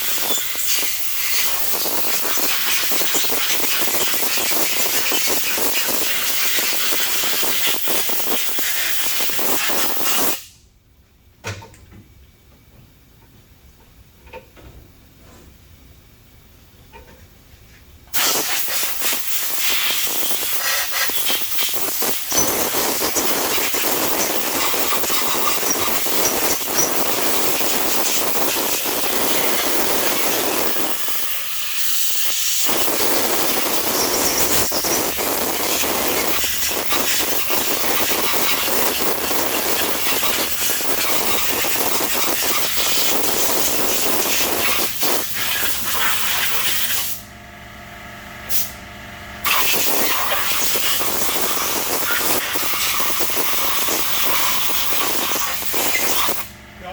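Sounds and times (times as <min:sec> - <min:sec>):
compressed air blow gun hissing: 0:18.2 - 0:47.2, 0:49.5 - 0:56.5.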